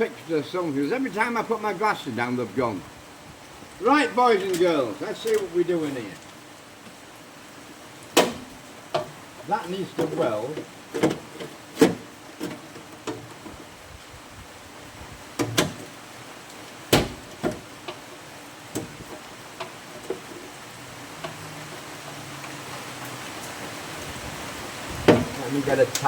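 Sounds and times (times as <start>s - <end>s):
rain hissing on a roof: 0.0s - 26.0s
knocks and taps of tools and sheet metal: 10.0s - 13.6s, 15.4s - 15.9s, 16.9s - 18.0s.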